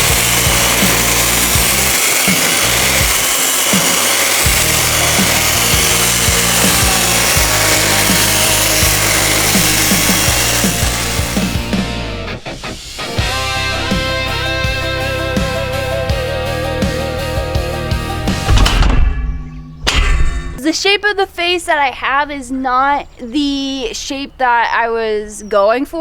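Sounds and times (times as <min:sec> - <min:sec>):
power carving tool cutting wood: 0:00.0 - 0:11.9
background music with bass: 0:00.0 - 0:20.6.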